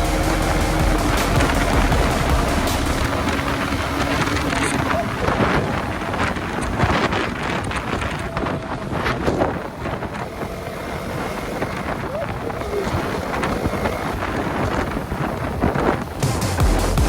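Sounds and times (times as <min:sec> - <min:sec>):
music: 0:00.0 - 0:04.0, 0:16.2 - 0:17.0
motorcycle engine and road noise: 0:00.0 - 0:17.0
wind rushing over microphone: 0:00.0 - 0:17.0.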